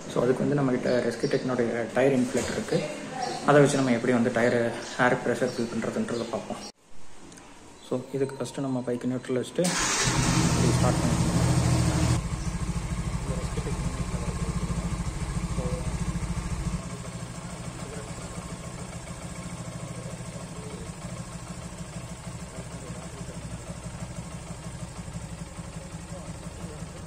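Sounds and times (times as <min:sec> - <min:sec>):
motorcycle engine idling: 0:09.7 - 0:27.0.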